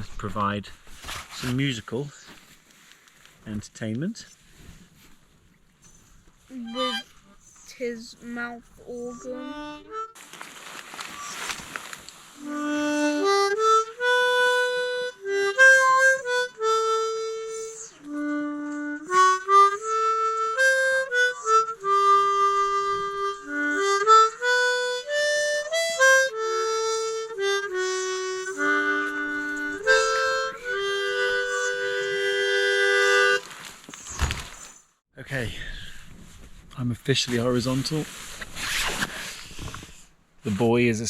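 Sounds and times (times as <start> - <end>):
harmonica playing slow tune: 6.5 - 10.2, 12.3 - 34.0
breaths: 35.4 - 36.2.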